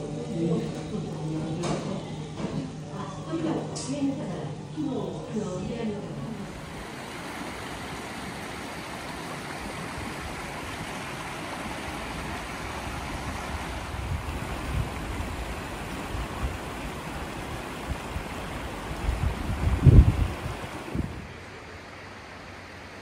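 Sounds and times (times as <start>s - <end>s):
flowing water rushing: 6.1s - 23.0s
wind buffeting microphone: 9.4s - 21.3s.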